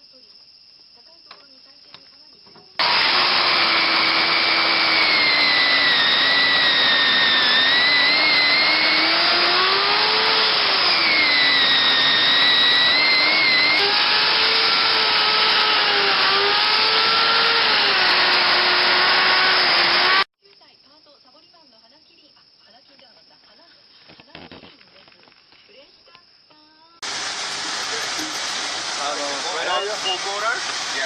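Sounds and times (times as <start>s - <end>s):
woodworking machine whining: 2.8s - 20.3s, 27.0s - 31.0s.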